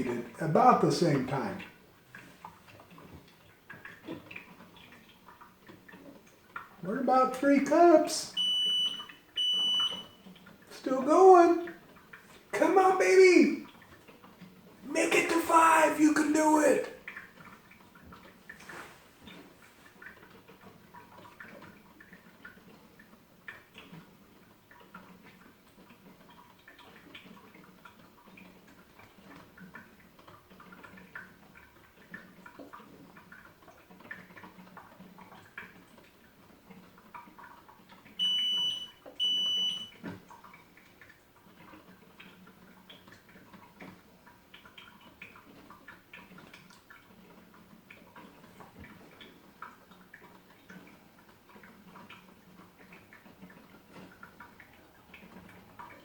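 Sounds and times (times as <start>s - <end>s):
high-pitched electronic beeps: 38.2s - 39.9s.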